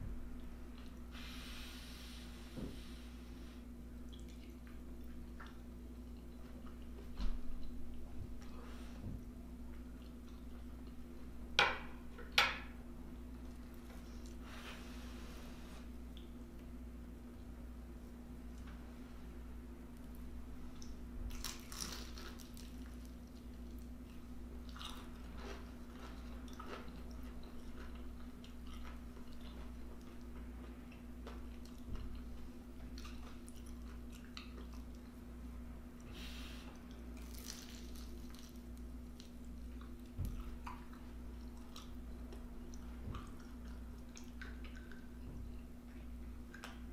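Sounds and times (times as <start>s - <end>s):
person chewing food: 20.8s - 35.2s, 36.1s - 46.9s.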